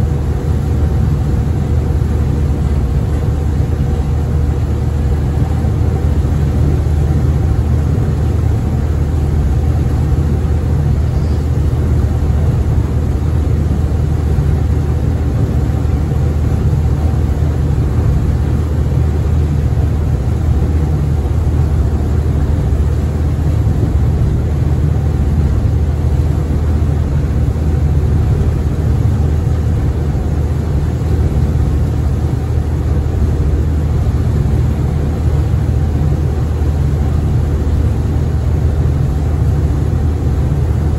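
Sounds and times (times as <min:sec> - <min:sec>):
ferry diesel engines droning: 0:00.0 - 0:40.9.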